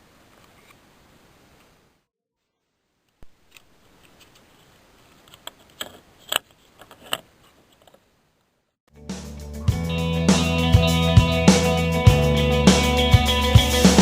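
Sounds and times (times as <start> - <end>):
tools and parts clicking: 5.2 - 8.0.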